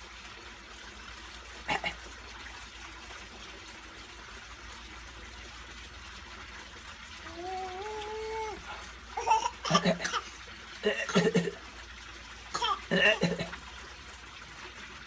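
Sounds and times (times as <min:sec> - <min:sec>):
child fake coughing: 0:07.3 - 0:11.7, 0:12.5 - 0:13.6.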